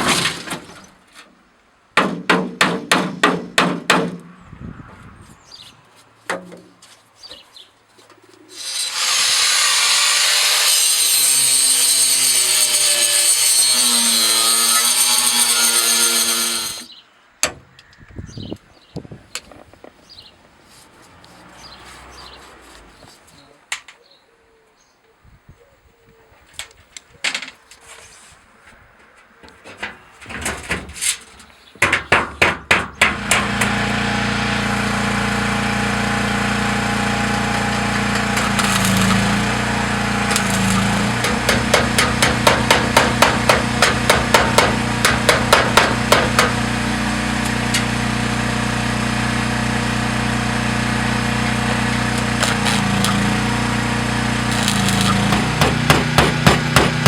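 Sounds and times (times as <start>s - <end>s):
hammer blows: 36.4s - 46.7s, 54.4s - 57.0s.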